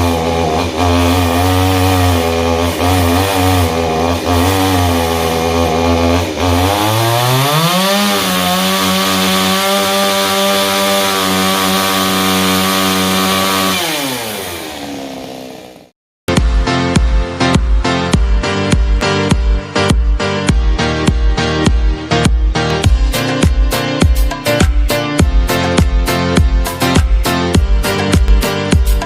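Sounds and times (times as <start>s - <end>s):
chainsaw revving: 0.0s - 16.0s
music with a beat: 16.3s - 29.0s.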